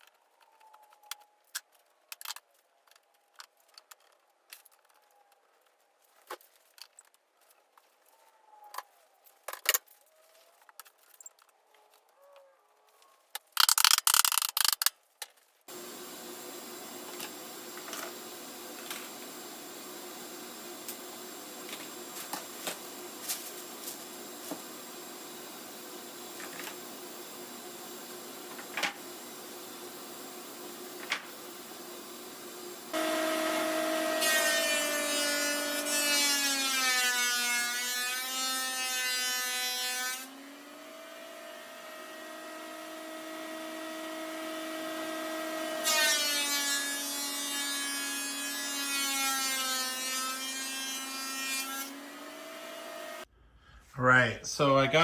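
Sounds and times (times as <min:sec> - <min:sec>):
steady machine hum: 0:15.7 - 0:34.1.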